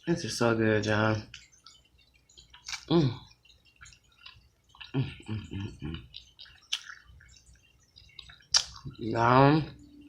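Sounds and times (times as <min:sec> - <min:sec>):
chewing with lip smacks: 0:01.3 - 0:09.0.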